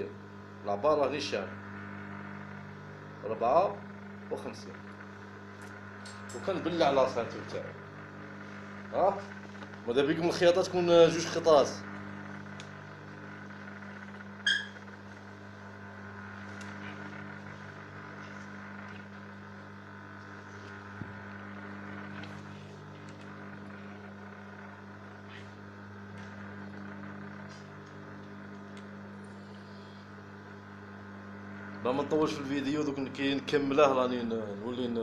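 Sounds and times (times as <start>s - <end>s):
low electrical hum: 0.0s - 35.0s
short high squeak: 14.4s - 14.8s.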